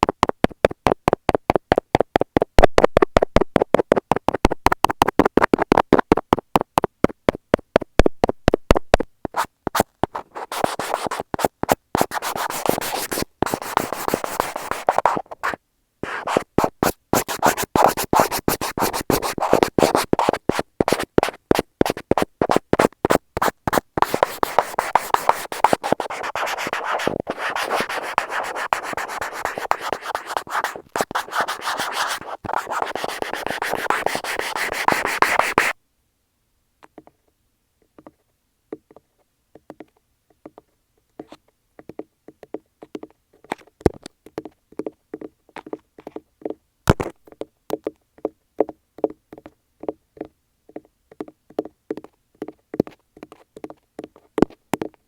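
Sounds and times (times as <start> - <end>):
pen tapping on microphone: 0.0 - 35.8, 38.0 - 55.0
scratchy rubbing on microphone: 0.0 - 35.8.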